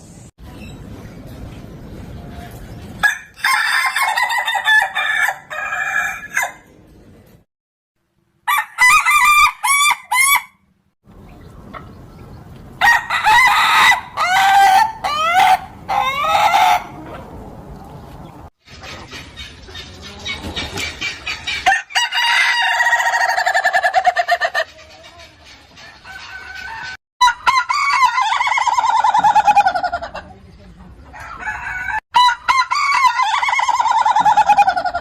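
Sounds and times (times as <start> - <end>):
roosters crowing: 3.0 - 6.7, 8.5 - 10.6, 12.8 - 17.5, 21.4 - 24.7, 25.8 - 30.2, 31.1 - 35.0.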